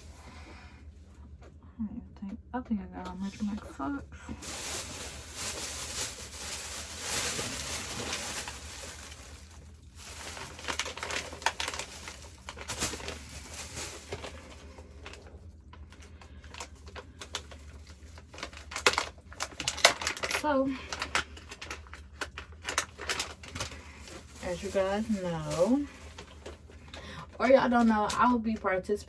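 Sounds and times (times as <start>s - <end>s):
steady low hum: 0.0s - 19.4s
rustling: 4.4s - 15.3s, 22.4s - 26.8s.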